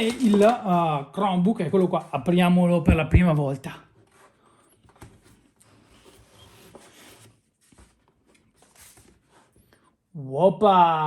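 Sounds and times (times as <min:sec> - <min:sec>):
laptop handling and rubbing: 0:00.0 - 0:00.8, 0:02.9 - 0:10.0.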